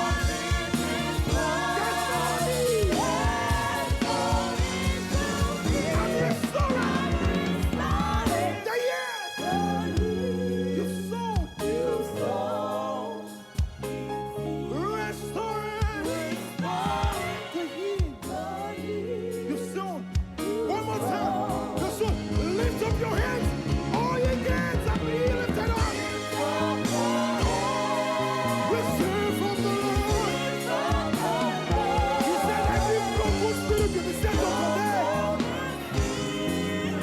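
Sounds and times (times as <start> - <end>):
drum beat: 0.0 - 8.6, 22.1 - 37.0
gospel band playing: 0.0 - 37.0.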